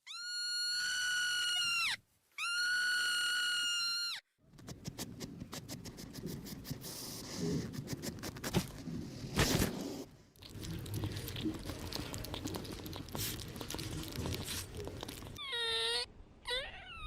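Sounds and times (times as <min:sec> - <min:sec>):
mice scurrying and scratching: 0:10.4 - 0:15.4.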